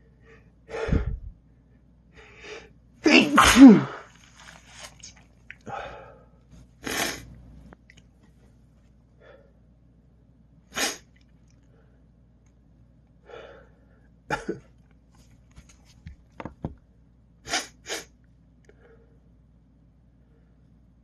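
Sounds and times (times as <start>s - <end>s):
man sneezing: 3.0s - 4.1s.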